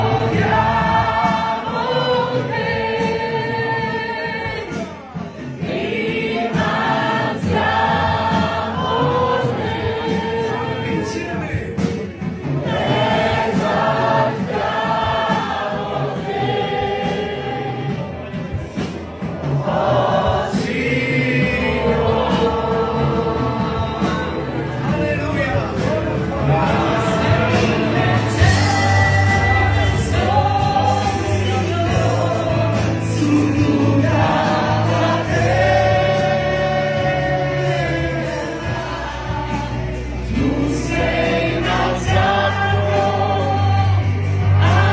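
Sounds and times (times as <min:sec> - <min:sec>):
bass accompaniment: 0:00.0 - 0:44.9
choir singing a hymn: 0:00.0 - 0:44.9.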